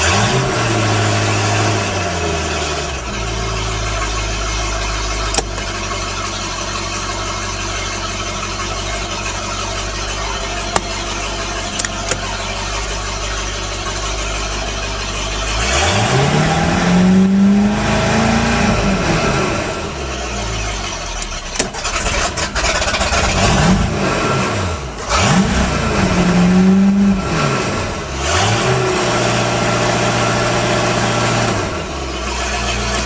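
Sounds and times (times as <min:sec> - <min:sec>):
boat engine idling and revving: 0:00.0 - 0:33.0
sharp clicks: 0:05.3 - 0:05.8, 0:10.7 - 0:12.4.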